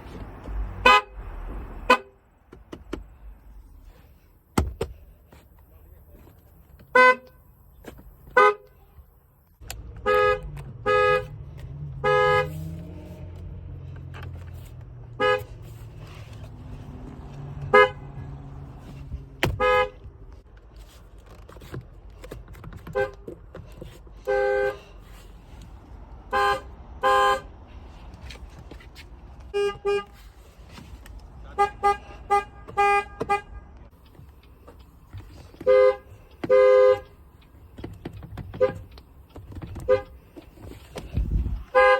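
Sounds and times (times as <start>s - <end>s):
car horns honking: 0.5s - 2.2s, 6.8s - 7.6s, 8.2s - 9.0s, 9.8s - 20.2s, 22.8s - 23.4s, 24.2s - 25.0s, 26.2s - 27.6s, 29.4s - 30.3s, 31.4s - 33.9s, 35.4s - 37.2s, 38.4s - 39.0s, 39.6s - 40.3s, 41.4s - 41.9s.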